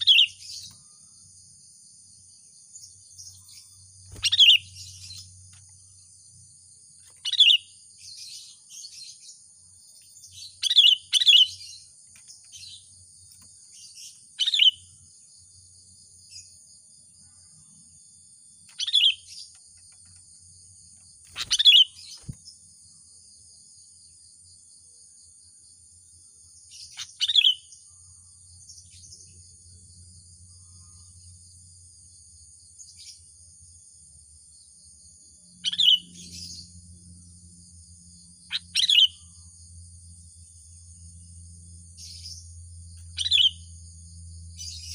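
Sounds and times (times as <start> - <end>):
high-pitched insect buzz: 0.0 - 24.6.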